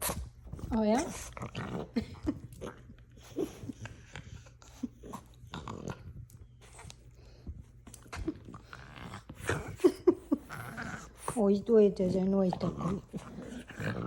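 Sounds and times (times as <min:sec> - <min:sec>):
puppy grunting and snuffling: 0:00.0 - 0:06.9, 0:07.9 - 0:14.0
dog grunting: 0:08.2 - 0:14.0.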